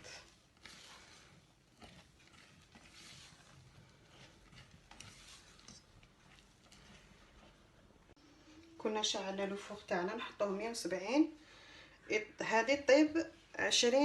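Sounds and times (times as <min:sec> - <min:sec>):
spatula scraping batter in bowl: 0:00.0 - 0:08.1.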